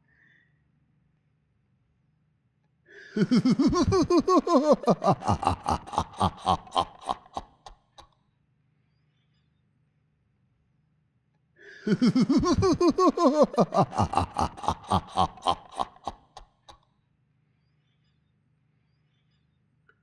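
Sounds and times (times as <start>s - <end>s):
man's evil laugh: 3.2s - 7.7s, 11.9s - 16.4s.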